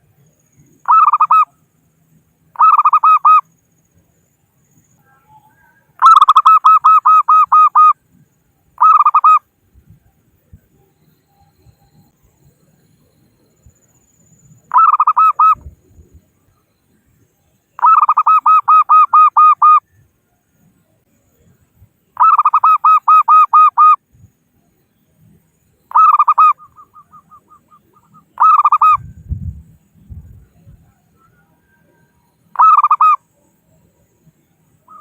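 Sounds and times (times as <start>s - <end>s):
dove rapid cooing: 26.0s - 29.0s.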